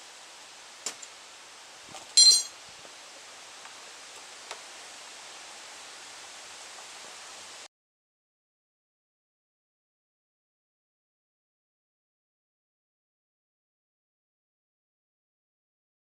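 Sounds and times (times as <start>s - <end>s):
steady hiss: 0.0s - 7.7s
metal tools clinking: 2.1s - 2.6s.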